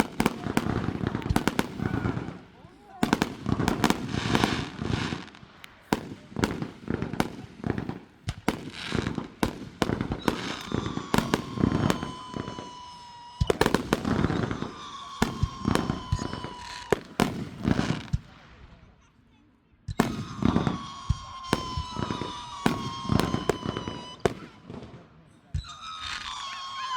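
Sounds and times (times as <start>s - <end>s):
fireworks bangs: 0.0s - 18.9s, 19.9s - 26.9s
falling firework whistle: 10.0s - 18.0s, 19.9s - 24.6s, 25.5s - 26.9s.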